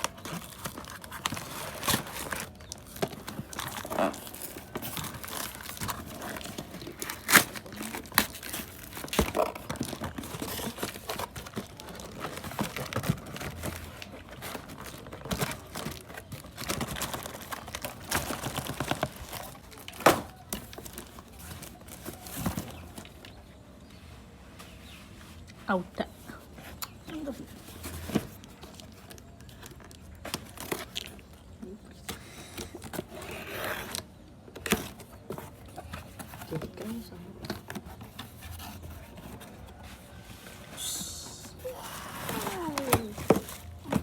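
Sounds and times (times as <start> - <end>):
packaging crinkling and tearing: 0.0 - 23.3, 27.8 - 31.9, 41.5 - 44.0.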